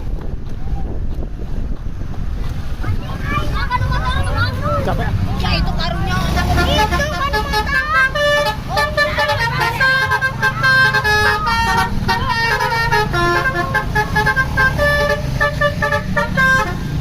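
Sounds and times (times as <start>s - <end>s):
bus engine running: 0.0s - 17.0s
multi-tone bus horn tune: 6.2s - 17.0s.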